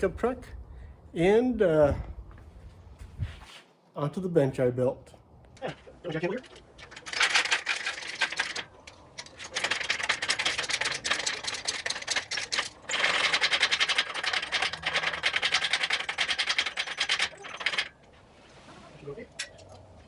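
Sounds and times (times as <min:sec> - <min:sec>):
rapid mechanical clicking: 0:05.7 - 0:18.2.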